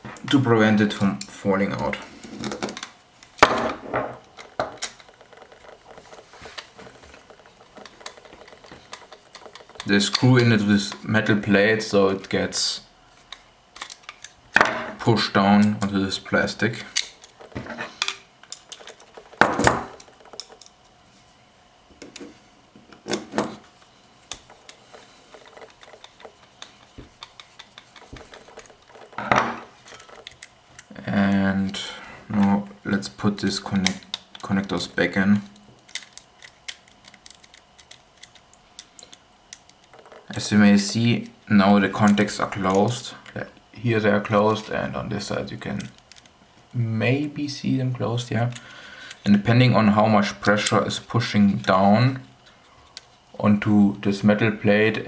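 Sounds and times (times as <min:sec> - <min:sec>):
metal parts clicking on plastic: 0:01.2 - 0:12.4, 0:13.2 - 0:20.9, 0:22.9 - 0:31.0, 0:32.4 - 0:43.4, 0:44.2 - 0:46.4.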